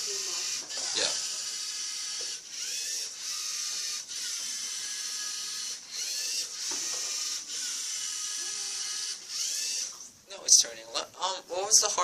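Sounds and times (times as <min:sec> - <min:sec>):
toy robot motors whirring: 0:00.0 - 0:10.1.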